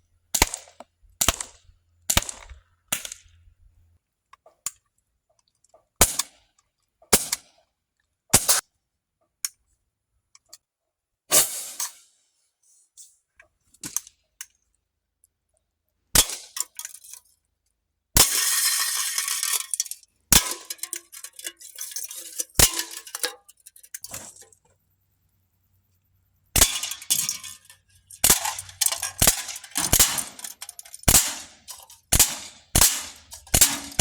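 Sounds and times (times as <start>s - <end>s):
airsoft pistol shots popping: 0.4s - 3.2s, 31.1s - 34.0s.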